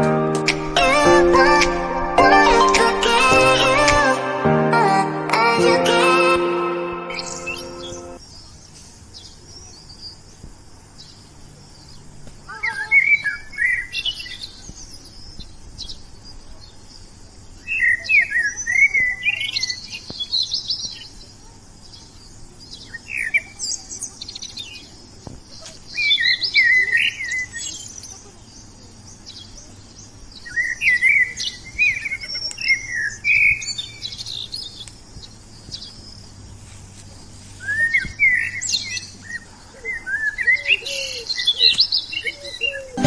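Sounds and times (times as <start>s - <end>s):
steady high hiss: 0.0s - 8.2s
songbirds chirping: 5.6s - 43.0s.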